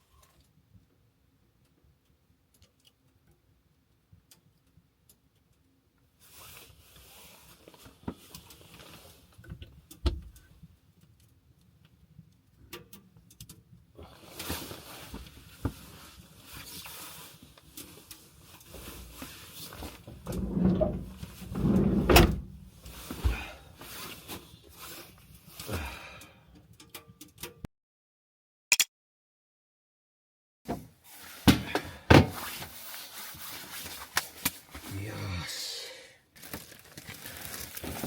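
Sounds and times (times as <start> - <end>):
scraping or rustling: 18.5 - 25.1, 36.4 - 38.0.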